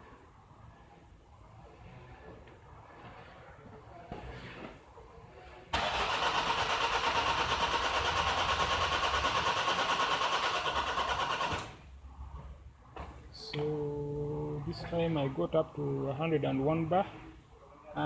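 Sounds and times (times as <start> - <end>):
diesel engine cranking: 5.8 - 11.9.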